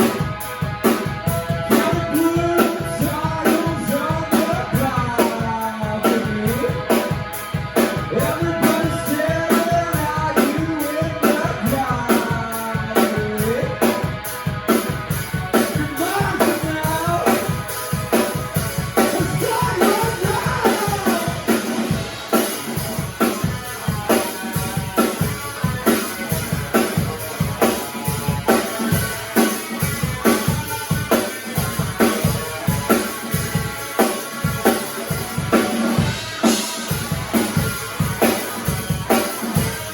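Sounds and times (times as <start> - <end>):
drum kit beat: 0.0 - 39.9
rock guitar: 0.0 - 39.9
person singing: 1.4 - 7.2, 8.0 - 14.1, 15.5 - 17.9, 18.9 - 22.4.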